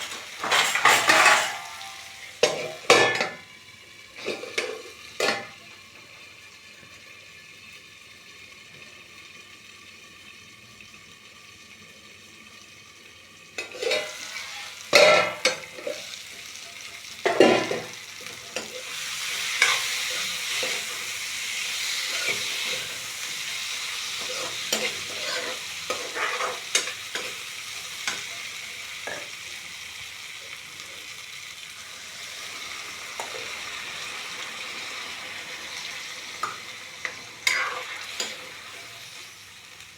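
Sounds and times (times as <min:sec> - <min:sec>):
spoon clanking on a pan: 0:00.0 - 0:03.4, 0:04.2 - 0:05.6, 0:13.6 - 0:16.6, 0:17.2 - 0:21.2, 0:24.2 - 0:27.4, 0:28.0 - 0:29.4, 0:36.4 - 0:39.0
spoon scraping a pan: 0:00.0 - 0:03.4, 0:04.2 - 0:05.6, 0:13.6 - 0:29.4, 0:31.8 - 0:35.0, 0:35.6 - 0:39.4
food sizzling in oil: 0:00.0 - 0:39.9.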